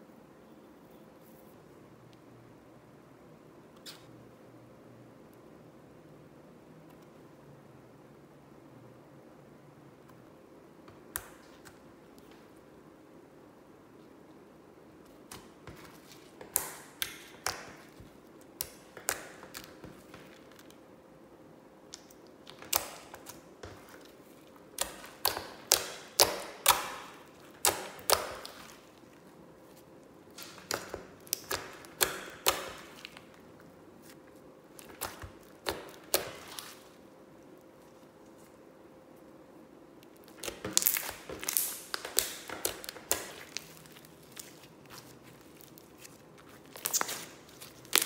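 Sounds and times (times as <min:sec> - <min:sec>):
slime popping and clicking: 0:30.3 - 0:33.3, 0:40.0 - 0:43.8.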